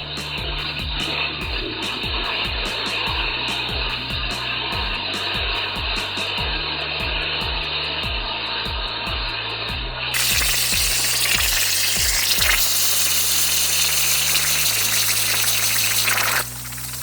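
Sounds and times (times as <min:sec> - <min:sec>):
bass-heavy music with kick drums: 0:00.0 - 0:17.0
power tool cutting metal: 0:10.1 - 0:17.0.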